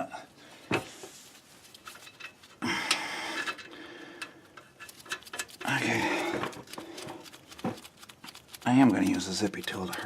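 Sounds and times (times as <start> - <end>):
metallic clicks and rattles: 1.8 - 10.0
metal scraping: 4.5 - 7.8.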